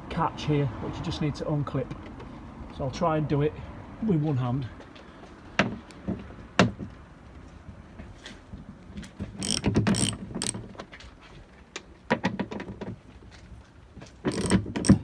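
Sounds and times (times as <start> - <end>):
ratchet clicking: 9.4 - 10.6, 14.3 - 15.0.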